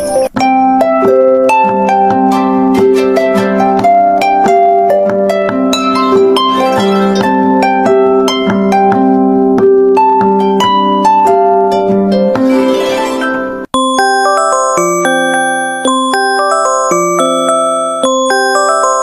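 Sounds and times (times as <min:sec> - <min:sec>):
harp-like phone alarm melody: 0:05.6 - 0:08.6, 0:12.1 - 0:19.0.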